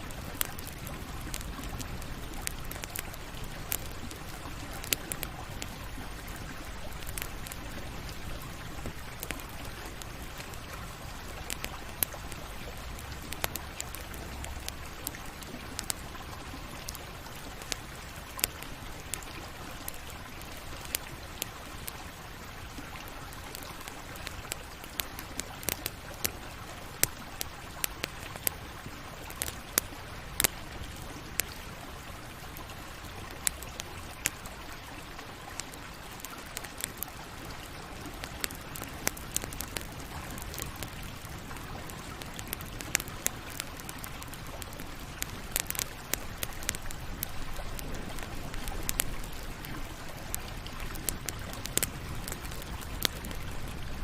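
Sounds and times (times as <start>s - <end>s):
burning wood crackling and popping: 0.0s - 54.0s
hiss of flames: 37.7s - 54.0s.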